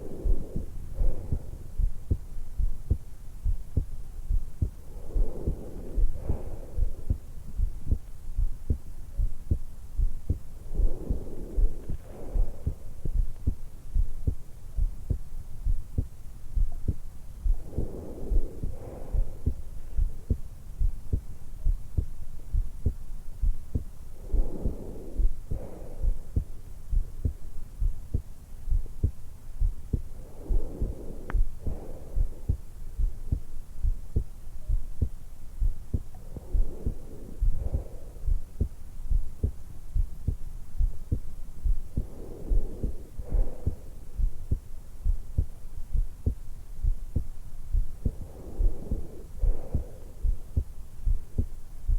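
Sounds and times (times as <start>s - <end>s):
woman breathing: 0.0s - 21.8s, 23.7s - 51.9s
heartbeat thumps: 0.0s - 51.9s.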